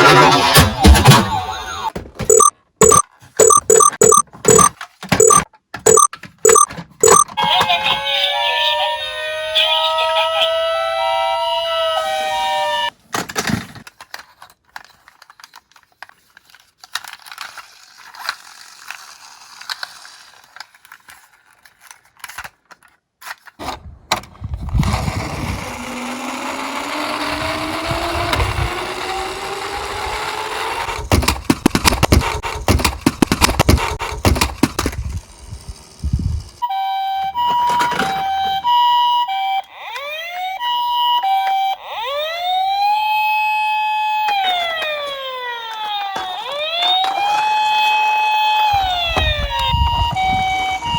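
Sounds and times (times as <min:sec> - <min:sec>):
toy car rolling with whir: 0:02.3 - 0:23.6, 0:24.3 - 0:40.2, 0:40.9 - 0:50.9
toy cars clicking and scraping: 0:13.0 - 0:23.6, 0:24.6 - 0:36.6, 0:44.3 - 0:47.8.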